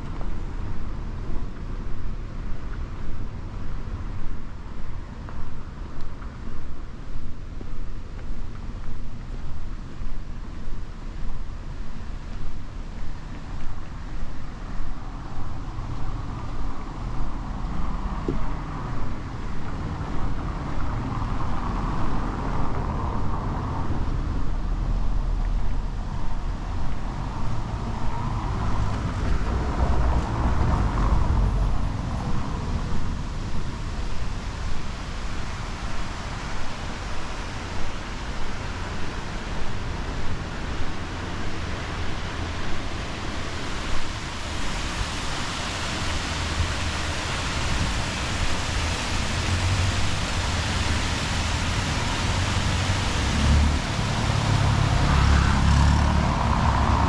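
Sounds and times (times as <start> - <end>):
car passing: 15.1 - 57.0.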